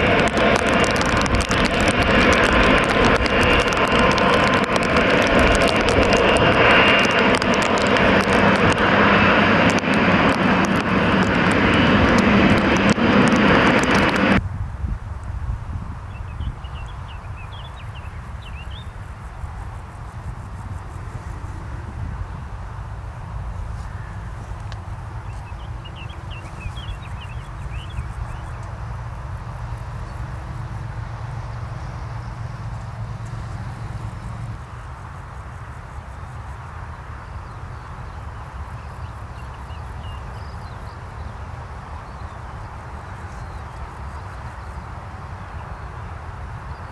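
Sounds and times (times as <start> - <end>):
jet engines roaring: 0.0 - 14.5, 15.2 - 46.9
deep rumble: 0.0 - 16.7
small birds chirping: 16.1 - 19.1, 25.2 - 28.8.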